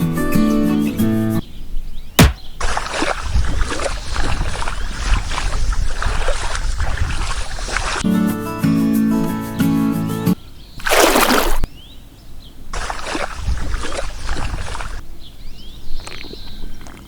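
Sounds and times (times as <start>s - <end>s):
sharp click: 2.2s - 2.5s
water splashing and sloshing: 2.2s - 8.0s, 10.8s - 11.7s, 12.8s - 15.0s.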